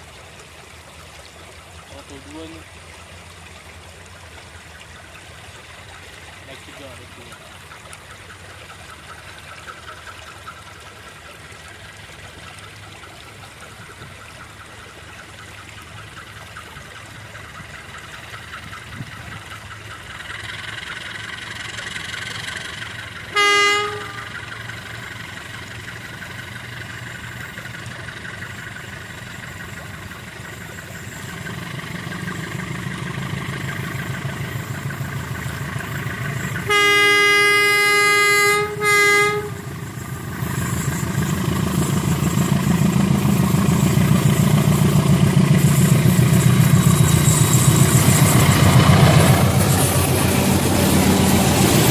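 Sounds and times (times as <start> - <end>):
locomotive engine running: 0.0 - 51.9
train horn blasts: 23.2 - 24.6, 36.6 - 39.9.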